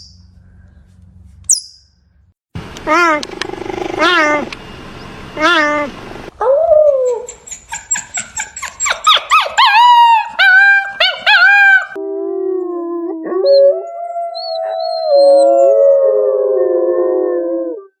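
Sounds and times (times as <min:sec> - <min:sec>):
puppy yipping and howling: 0:06.4 - 0:17.9
adult dogs howling together: 0:13.1 - 0:17.8.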